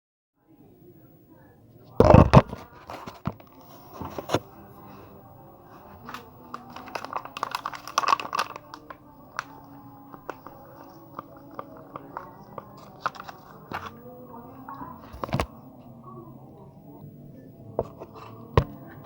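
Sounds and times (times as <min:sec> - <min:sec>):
bird clicks and crackles: 0:06.0 - 0:14.0.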